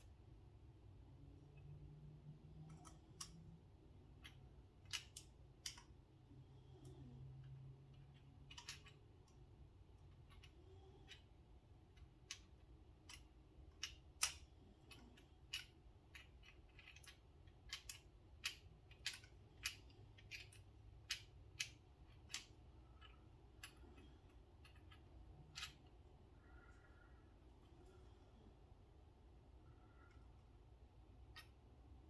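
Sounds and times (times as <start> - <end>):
small metal tools clicking: 2.6 - 6.0, 6.7 - 9.4, 11.9 - 26.0.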